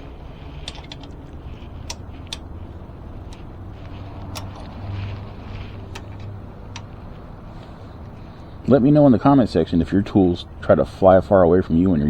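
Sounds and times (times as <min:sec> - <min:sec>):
tool clicks: 0:00.0 - 0:08.5
low steady hum: 0:00.0 - 0:12.0.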